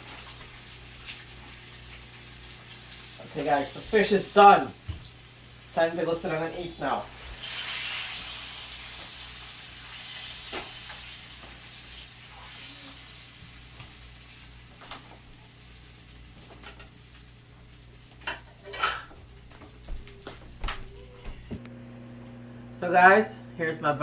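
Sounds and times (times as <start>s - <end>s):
oil sizzling in a frying pan: 0.0s - 20.3s
utensils and dishes clinking: 16.4s - 21.6s.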